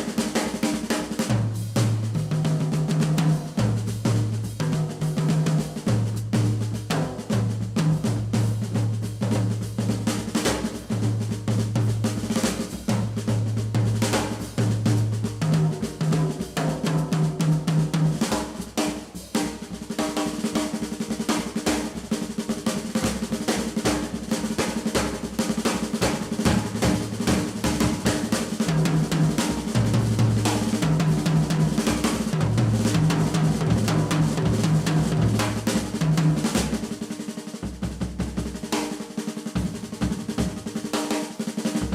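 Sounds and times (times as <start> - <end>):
snare drum rolls and rimshots: 0.0 - 41.9
bass drum: 25.3 - 37.0, 39.6 - 40.7.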